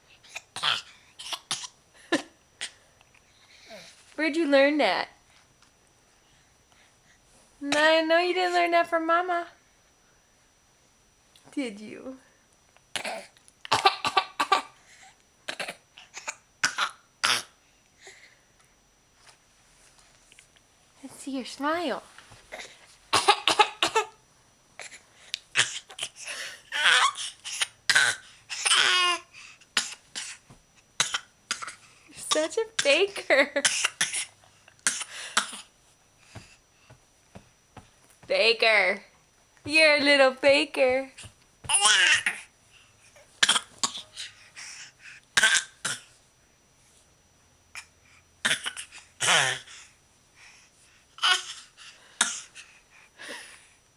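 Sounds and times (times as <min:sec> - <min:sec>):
child fake coughing: 0:00.3 - 0:02.3, 0:12.9 - 0:14.8, 0:15.5 - 0:17.6, 0:23.1 - 0:24.2, 0:26.8 - 0:29.2, 0:31.0 - 0:35.7, 0:43.4 - 0:44.1, 0:45.4 - 0:46.1, 0:48.4 - 0:49.6
child throat-clearing: 0:00.4 - 0:01.7, 0:15.5 - 0:17.5, 0:45.4 - 0:46.1, 0:48.4 - 0:49.6
baby laughing and babbling: 0:41.7 - 0:42.4.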